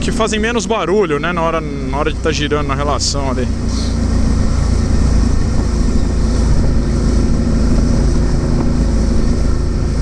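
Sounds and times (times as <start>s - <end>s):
motorcycle engine drone: 0.0s - 10.0s
wind rushing on microphone: 0.0s - 10.0s.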